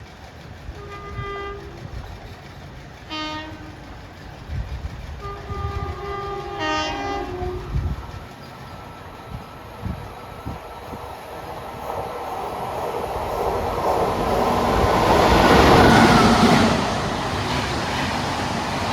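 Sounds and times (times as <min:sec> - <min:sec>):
moving train rumble: 0:00.0 - 0:18.9
train horn blasts: 0:00.8 - 0:01.9, 0:03.1 - 0:03.8, 0:05.2 - 0:07.8.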